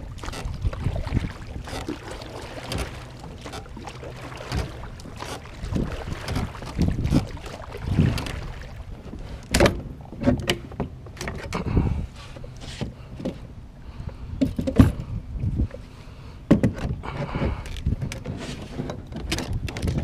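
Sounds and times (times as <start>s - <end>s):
wind on microphone: 0.0s - 10.2s, 11.5s - 12.4s, 13.9s - 20.0s
oars knocking in oarlocks: 0.0s - 11.7s.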